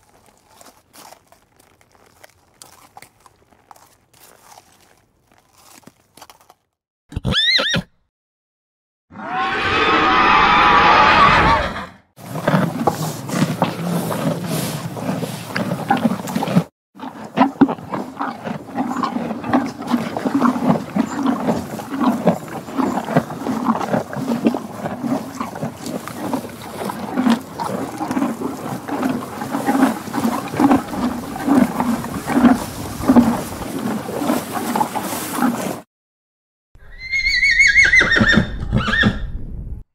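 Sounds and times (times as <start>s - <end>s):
short low horse pulses: 12.2s - 35.8s.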